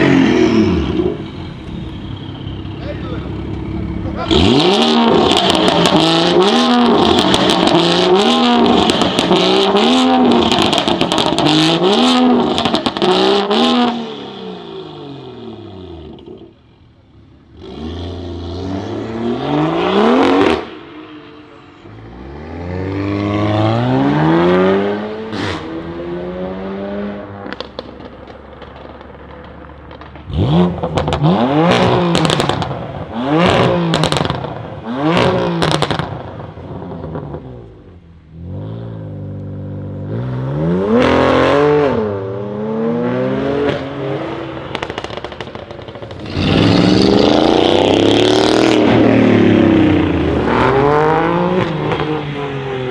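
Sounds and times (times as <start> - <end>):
car engine revving hard: 0.0 - 15.6, 17.6 - 20.7, 30.3 - 36.2, 46.0 - 52.9
exhaust crackles and pops: 0.9 - 9.5, 27.3 - 37.4, 44.6 - 49.0.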